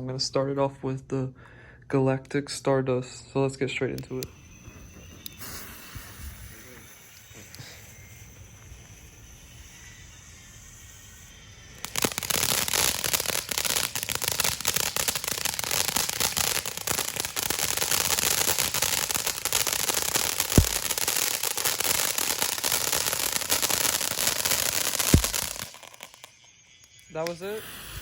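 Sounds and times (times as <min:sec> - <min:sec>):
firework fountain crackling hiss: 0:04.1 - 0:28.0.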